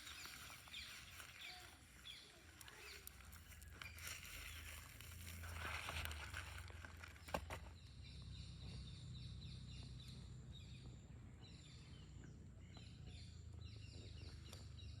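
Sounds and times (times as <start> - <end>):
birds chirping: 0.0 - 4.8.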